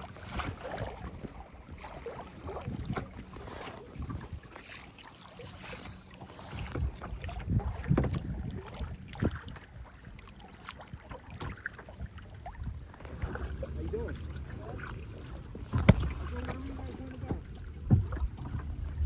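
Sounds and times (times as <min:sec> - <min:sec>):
wind buffeting microphone: 0:00.0 - 0:04.5, 0:06.6 - 0:09.6, 0:12.4 - 0:19.0
boat hull and water rumble: 0:00.0 - 0:19.0.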